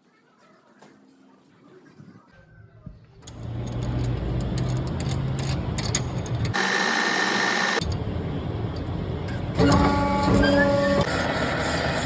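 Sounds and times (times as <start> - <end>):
machine humming and clicking: 3.2 - 11.4.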